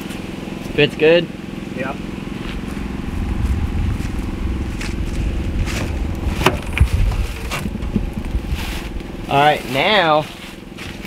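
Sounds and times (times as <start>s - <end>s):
low rumble and hum: 0.0s - 11.0s.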